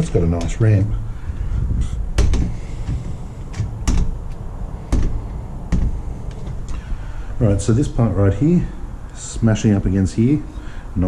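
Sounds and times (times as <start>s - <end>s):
door latch clicking against strike: 2.2s - 6.6s.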